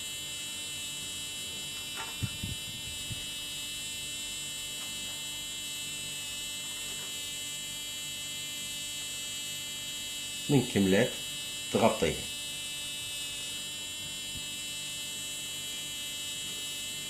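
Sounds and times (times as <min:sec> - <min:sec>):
electrical hum with whine: 0:00.0 - 0:17.0.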